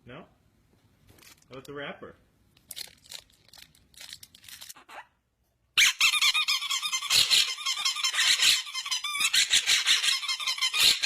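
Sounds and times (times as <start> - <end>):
faint crinkling: 2.4 - 4.8.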